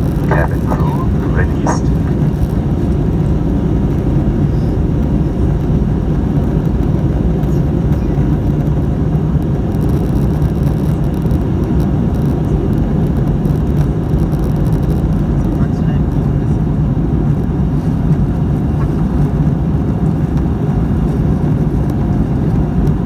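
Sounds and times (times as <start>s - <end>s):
faint hum: 0.0s - 3.0s
jet engine and airflow rumble: 0.0s - 23.0s.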